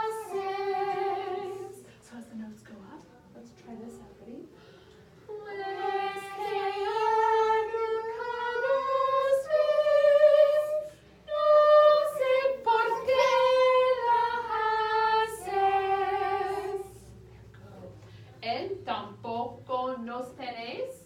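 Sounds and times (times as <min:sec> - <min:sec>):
woman singing unaccompanied: 0:00.0 - 0:01.9, 0:05.3 - 0:17.0.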